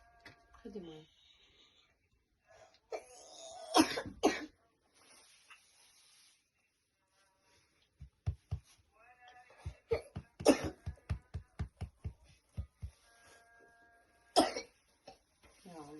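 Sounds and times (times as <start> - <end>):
girl coughing: 2.9 - 4.6, 9.9 - 10.8, 14.4 - 15.2.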